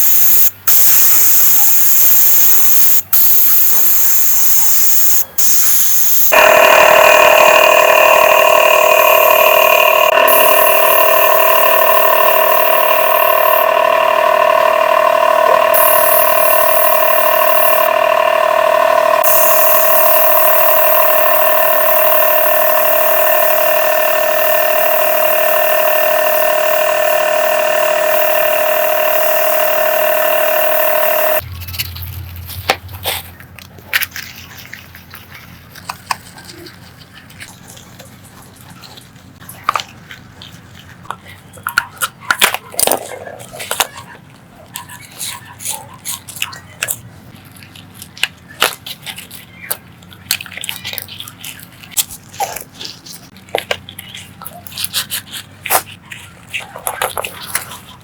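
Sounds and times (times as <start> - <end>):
small electric motor whirring: 0.0 - 33.4.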